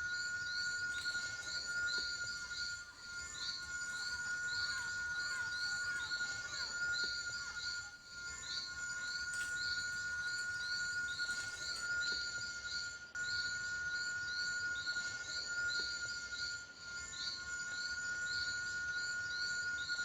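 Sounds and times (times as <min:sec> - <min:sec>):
rhythmic chirping: 0:00.0 - 0:11.6
high-pitched insect drone: 0:00.0 - 0:20.0.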